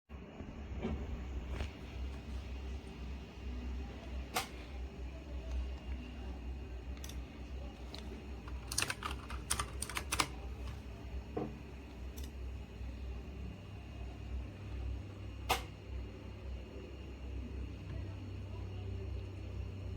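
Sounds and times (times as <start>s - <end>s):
steady low hum: 0.1s - 19.9s
keyboard key clicks: 7.9s - 10.8s.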